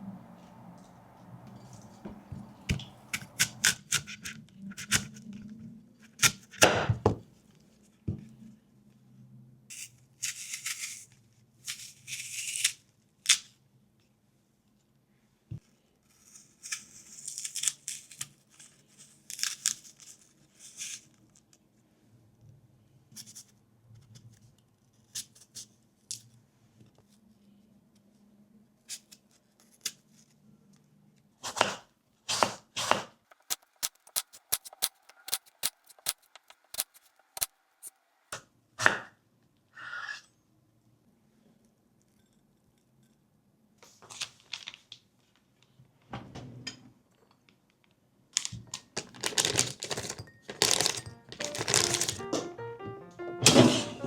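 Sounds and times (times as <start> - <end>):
knife chopping on cutting board: 31.4 - 33.1
packaging rustling and tearing: 44.1 - 45.0, 48.4 - 52.2.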